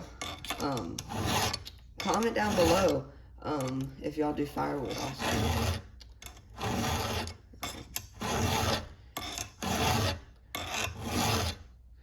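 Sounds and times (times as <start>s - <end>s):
file rasping on chainsaw chain: 0.0s - 3.1s, 4.6s - 11.7s.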